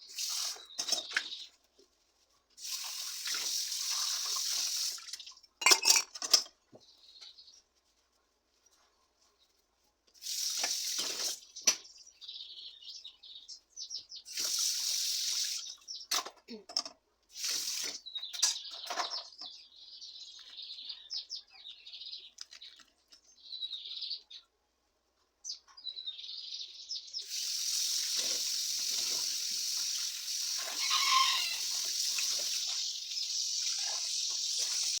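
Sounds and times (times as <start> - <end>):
tap water running into sink: 2.6 - 5.3, 27.3 - 35.0.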